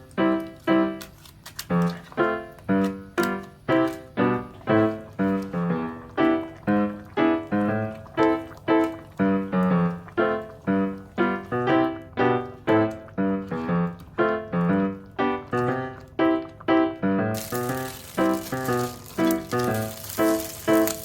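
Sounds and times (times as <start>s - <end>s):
piano melody: 0.0s - 21.0s
steady hiss: 17.4s - 21.0s.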